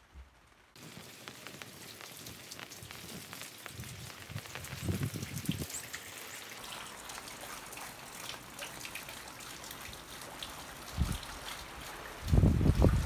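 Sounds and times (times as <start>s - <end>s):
rain falling and dripping: 0.0s - 13.0s.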